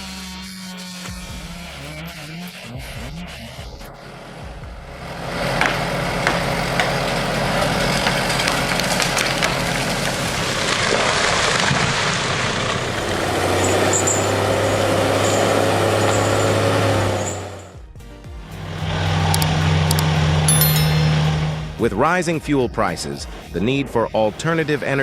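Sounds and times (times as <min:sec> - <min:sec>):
heavy machinery engine running: 0:03.9 - 0:17.7, 0:18.5 - 0:21.8.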